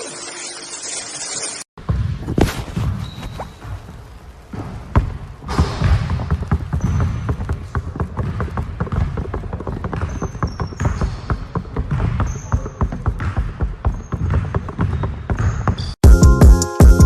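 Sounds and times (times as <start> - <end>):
loud hip hop music: 16.0 - 17.0.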